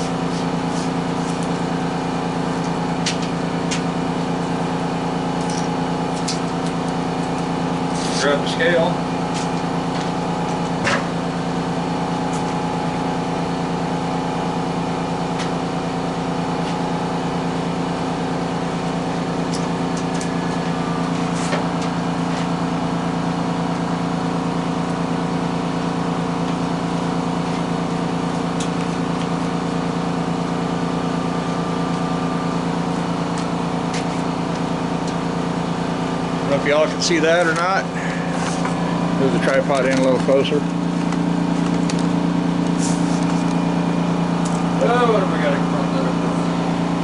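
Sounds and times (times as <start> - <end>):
electric motor humming: 0.0 - 47.0.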